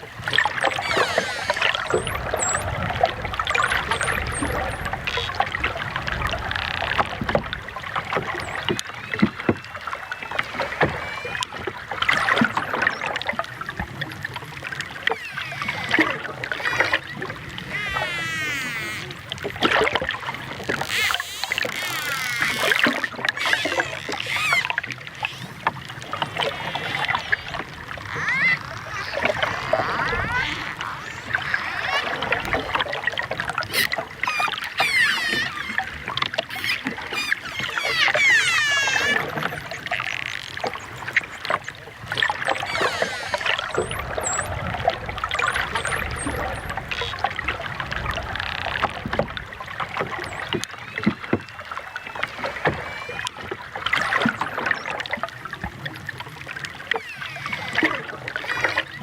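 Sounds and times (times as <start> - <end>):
dolphins whistling: 0.4 - 2.8, 3.4 - 5.4, 15.1 - 19.3, 20.8 - 25.6, 26.2 - 32.8, 33.7 - 44.7, 45.3 - 47.2
dolphin clicks: 33.6 - 41.6.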